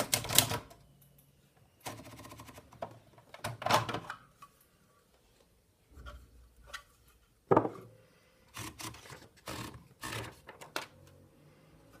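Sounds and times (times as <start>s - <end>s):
typewriter clicks: 0.0s - 0.8s.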